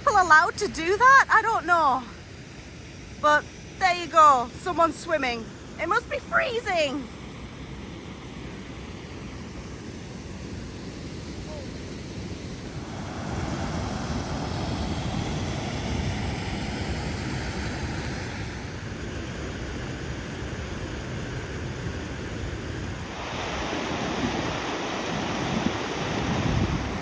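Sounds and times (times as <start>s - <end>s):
waterfall rushing: 8.4s - 19.7s, 21.9s - 27.0s.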